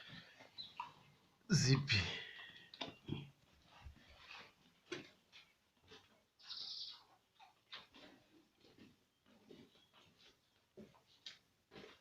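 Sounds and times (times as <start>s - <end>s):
pig chewing feed: 5.8s - 10.3s.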